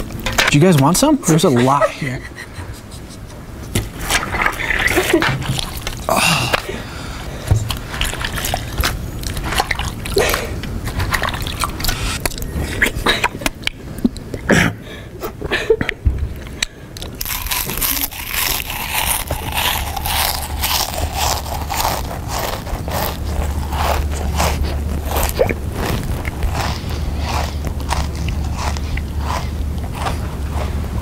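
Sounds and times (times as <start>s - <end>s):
person crunching and chewing: 4.0s - 12.9s, 16.5s - 31.0s
wet slurping mouth sounds: 7.7s - 13.0s, 17.2s - 31.0s.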